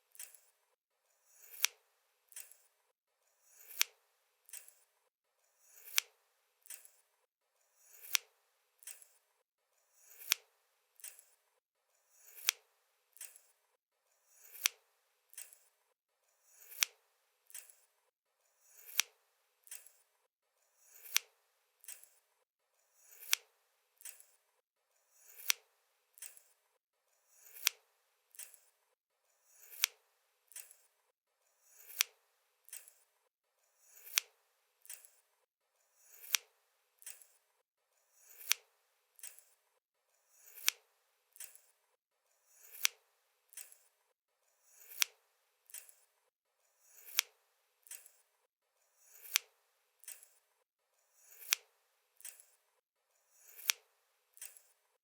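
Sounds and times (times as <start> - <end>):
scissors snipping: 0.1 - 0.5, 1.4 - 2.7, 3.6 - 4.9, 5.8 - 7.0, 7.9 - 9.2, 10.1 - 11.4, 12.3 - 12.6, 13.2 - 13.6, 14.4 - 15.7, 16.6 - 17.9, 18.8 - 20.0, 20.9 - 22.2, 23.1 - 24.4, 25.3 - 26.5, 27.4 - 28.7, 29.6 - 30.9, 31.8 - 33.0, 34.0 - 35.2, 36.1 - 37.4, 38.3 - 39.5, 40.4 - 40.8, 41.4 - 41.7, 42.6 - 43.9, 44.8 - 46.0, 47.0 - 48.2, 49.1 - 50.4, 51.3 - 52.5, 53.5 - 53.8, 54.4 - 54.7.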